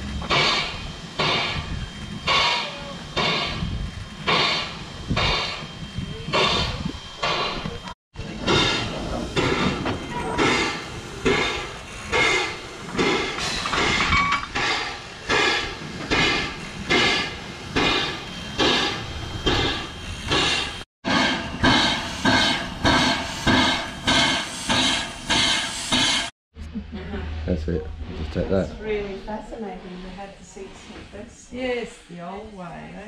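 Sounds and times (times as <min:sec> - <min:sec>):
steam locomotive chuffing: 0:00.0 - 0:26.3.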